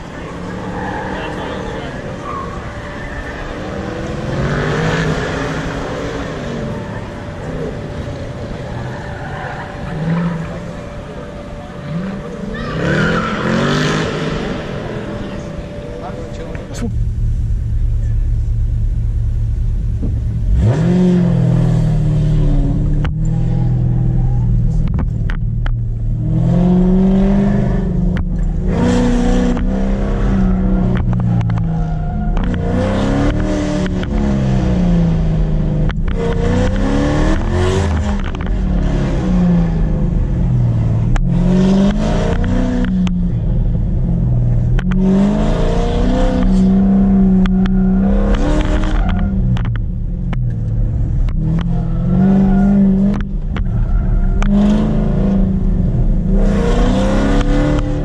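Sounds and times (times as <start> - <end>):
car engine revving hard: 19.8 - 24.2, 26.2 - 31.7, 44.5 - 49.2, 51.2 - 58.0.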